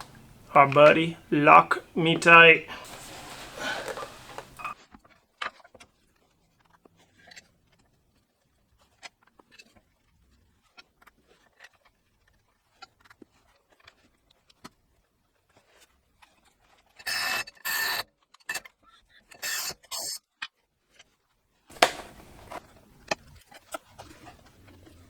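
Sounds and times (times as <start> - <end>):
hand tools clicking and tapping: 21.7 - 23.2.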